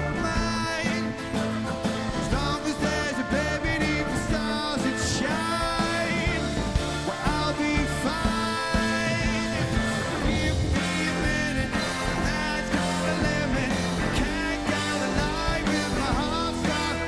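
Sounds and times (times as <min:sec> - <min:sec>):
electric guitar bent notes: 0:00.0 - 0:17.0
rock band playing: 0:00.0 - 0:17.0.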